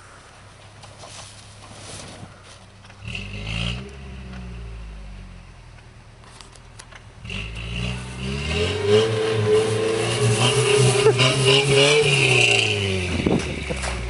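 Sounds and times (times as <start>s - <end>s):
car engine revving: 2.8s - 14.0s.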